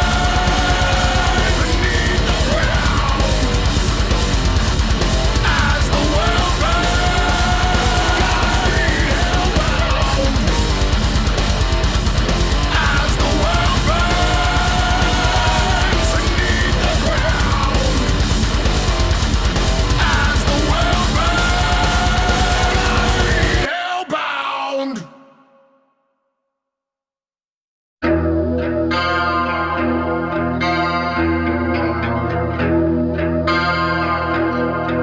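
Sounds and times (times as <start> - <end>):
heavy metal music: 0.0 - 24.2
lead guitar melody: 28.0 - 35.0.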